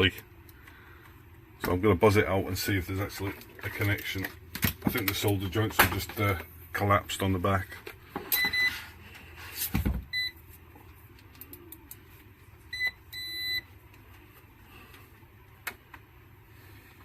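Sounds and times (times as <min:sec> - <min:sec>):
multimeter beeping: 0:12.7 - 0:13.7.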